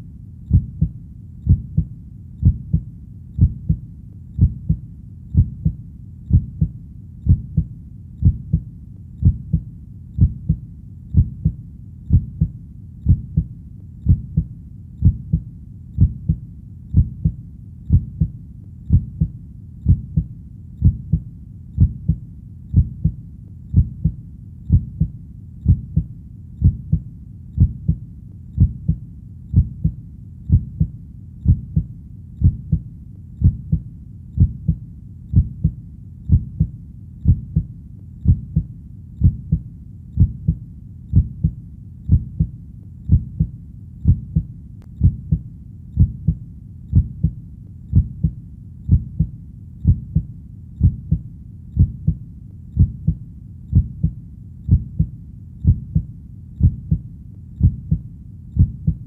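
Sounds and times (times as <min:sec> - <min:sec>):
heartbeat double thump: 0:00.5 - 0:03.8, 0:04.4 - 0:04.8, 0:05.4 - 0:06.7, 0:07.3 - 0:08.6, 0:09.2 - 0:09.6, 0:10.2 - 0:10.6, 0:11.2 - 0:12.5, 0:14.1 - 0:15.4, 0:18.9 - 0:21.2, 0:21.8 - 0:27.0, 0:27.6 - 0:28.0, 0:28.6 - 0:32.8, 0:33.4 - 0:33.8, 0:34.4 - 0:39.6, 0:40.2 - 0:42.5, 0:43.1 - 0:45.4, 0:46.0 - 0:51.2, 0:51.8 - 0:52.2, 0:52.8 - 0:57.0, 0:57.6 - 0:58.0, 0:58.6 - 0:59.0.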